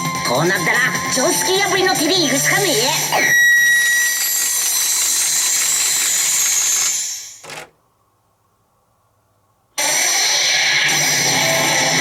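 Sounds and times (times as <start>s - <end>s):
faint high electronic tones: 3.1s - 5.6s.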